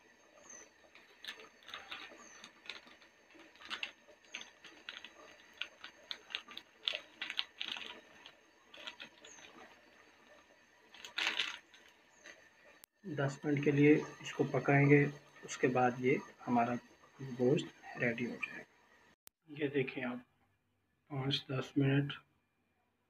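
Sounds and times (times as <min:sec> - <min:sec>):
utensil scraping metal pot: 0:00.4 - 0:12.5.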